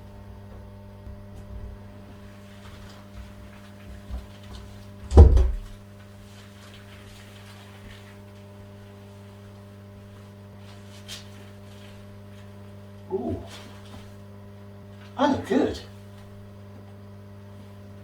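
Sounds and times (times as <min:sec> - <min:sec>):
electrical mains hum: 0:00.0 - 0:18.0
loud short thump: 0:05.1 - 0:05.7.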